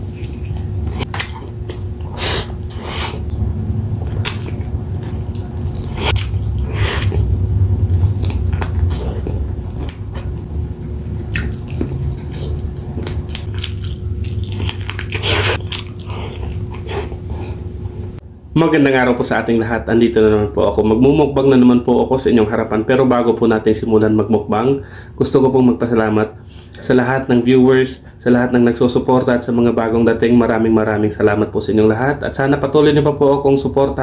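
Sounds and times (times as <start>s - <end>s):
mouth chewing food: 0.0s - 3.2s, 4.0s - 10.5s, 11.3s - 18.2s
steady low hum: 0.0s - 34.0s
wet mouth clicks and smacks: 4.0s - 7.1s, 11.3s - 17.1s.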